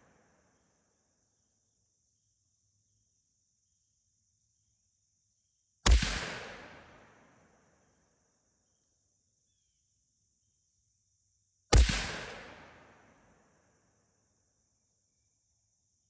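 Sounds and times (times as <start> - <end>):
rifle shot echoing: 5.9 - 7.2, 11.8 - 13.0.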